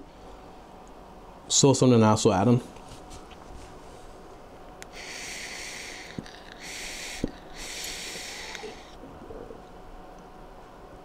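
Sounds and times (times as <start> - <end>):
breathy vapour exhales: 4.9 - 9.6.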